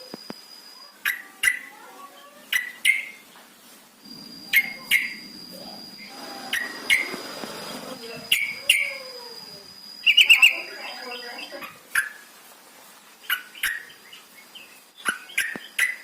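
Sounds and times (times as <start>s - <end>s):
thin high tone: 4.0s - 11.8s.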